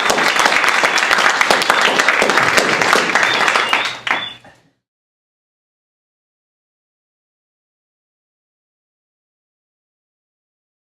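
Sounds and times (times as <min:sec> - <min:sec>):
audience applauding: 0:00.0 - 0:04.6.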